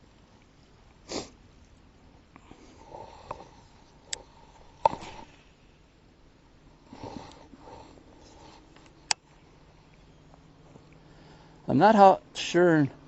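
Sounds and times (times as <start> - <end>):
person sniffing: 1.0 - 1.4.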